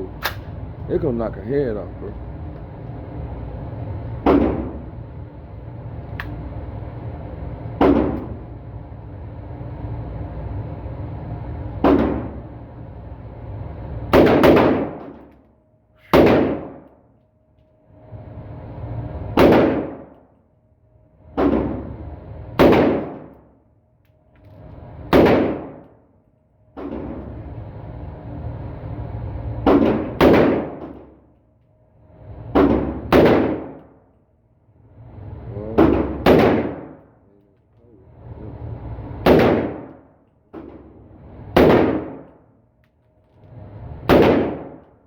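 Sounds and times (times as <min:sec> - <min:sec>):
rifle shots with echo: 0:14.1 - 0:15.0, 0:16.1 - 0:16.8, 0:19.4 - 0:20.1, 0:22.6 - 0:23.3, 0:25.1 - 0:25.8, 0:29.7 - 0:30.8, 0:32.6 - 0:33.8, 0:35.9 - 0:37.0, 0:39.2 - 0:39.9, 0:41.6 - 0:42.3, 0:44.1 - 0:44.8.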